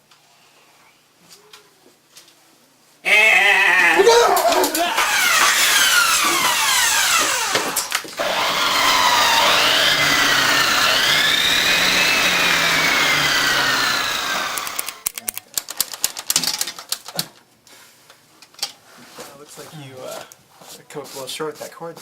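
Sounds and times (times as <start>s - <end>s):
circular saw whining: 4.6s - 15.0s.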